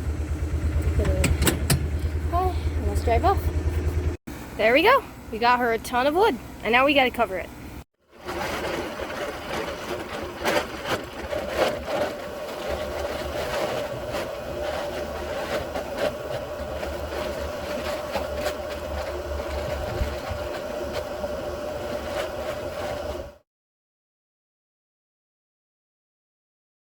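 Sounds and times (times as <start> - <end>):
utility vehicle motor hum: 0.0 - 23.4
knocks and rattles: 0.8 - 2.4.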